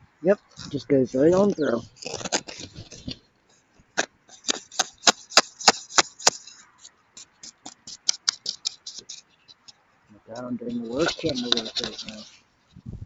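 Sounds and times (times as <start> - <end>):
crunching of icy snow: 0.6 - 3.2
scratchy rustle: 0.6 - 3.3, 3.9 - 12.9.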